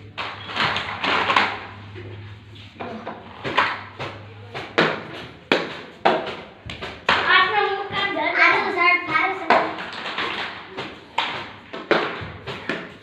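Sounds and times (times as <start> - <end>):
sharp knocks or slaps: 9.0 - 13.0.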